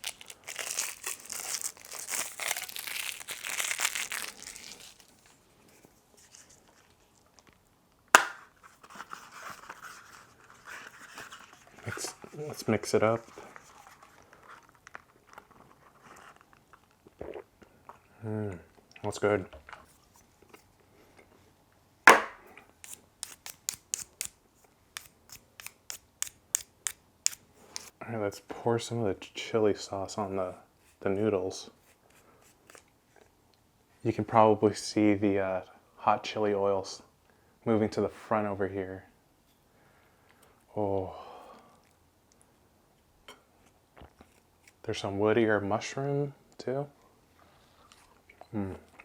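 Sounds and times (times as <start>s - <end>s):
plastic packaging crinkling: 0.0s - 7.3s
sharp snap: 8.2s - 8.4s
tableware knock: 22.1s - 22.4s.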